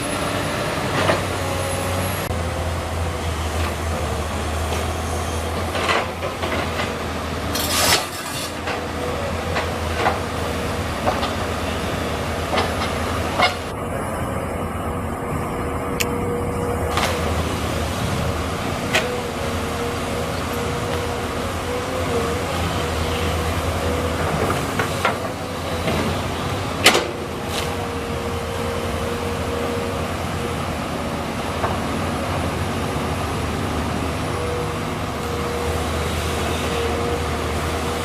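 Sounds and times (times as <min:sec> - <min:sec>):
excavator engine drone: 0:00.0 - 0:38.0
excavator knocks and clanks: 0:04.6 - 0:13.8, 0:18.2 - 0:19.6, 0:23.0 - 0:28.4.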